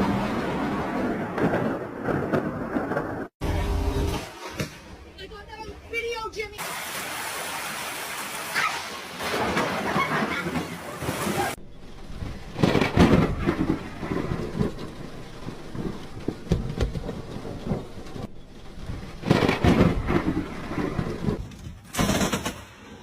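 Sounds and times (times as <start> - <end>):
thunder crack and rumble: 0.0 - 3.9, 11.5 - 23.0
steady rain: 6.6 - 21.4.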